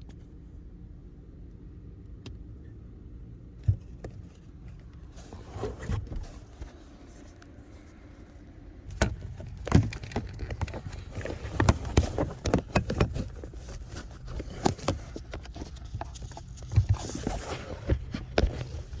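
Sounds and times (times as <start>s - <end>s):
clicks knocks and scrapes: 8.9s - 19.0s
plastic parts rustling: 8.9s - 19.0s.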